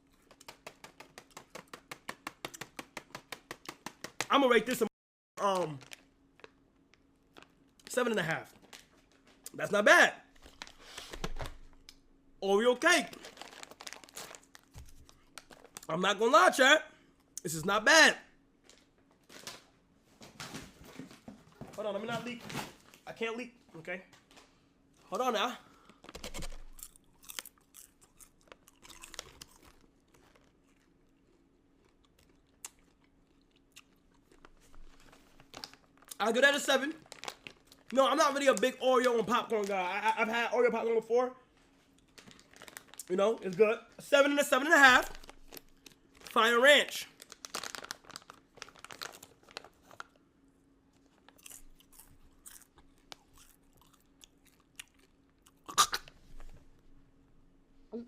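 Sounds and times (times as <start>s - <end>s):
person chewing popcorn: 0.0s - 4.2s, 13.1s - 15.9s, 25.7s - 36.2s, 45.0s - 46.4s, 47.2s - 50.2s, 51.0s - 56.6s
faint steady hum: 0.0s - 58.0s.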